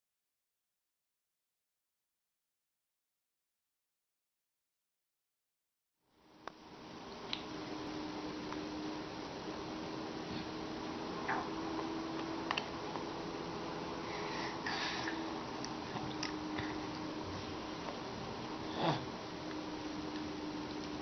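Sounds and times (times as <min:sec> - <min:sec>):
steady low hum: 0:06.1 - 0:21.0
baby sniffing and mouth noises: 0:14.0 - 0:15.2.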